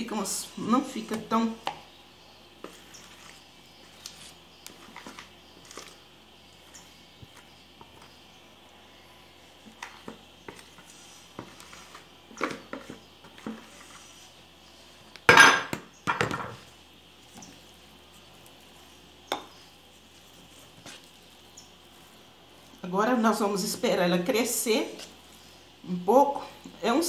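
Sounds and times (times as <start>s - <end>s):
dishes clattering: 15.3s - 16.6s.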